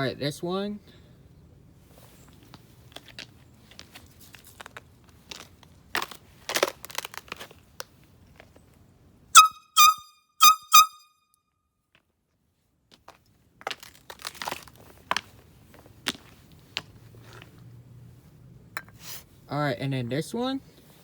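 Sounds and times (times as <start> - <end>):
crinkling and handling clicks: 2.4 - 8.6
air horn blasts: 9.4 - 11.1.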